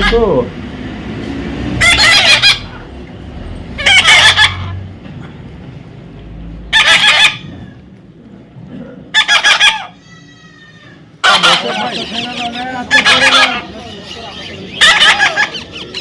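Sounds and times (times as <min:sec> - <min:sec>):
parrot squawking: 0:00.0 - 0:00.3, 0:01.8 - 0:02.9, 0:03.8 - 0:04.8, 0:06.7 - 0:07.8, 0:09.1 - 0:16.0.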